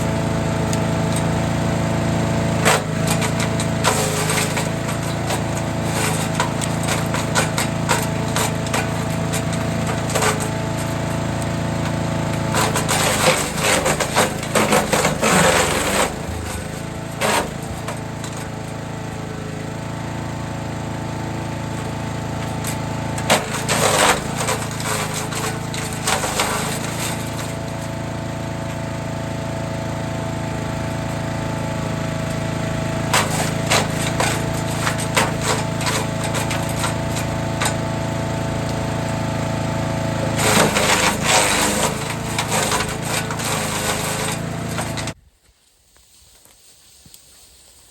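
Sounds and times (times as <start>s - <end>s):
wood chipper engine running: 0.0s - 45.2s
wood cracking and snapping: 2.6s - 19.2s, 21.8s - 28.0s, 33.1s - 37.8s, 40.4s - 45.2s.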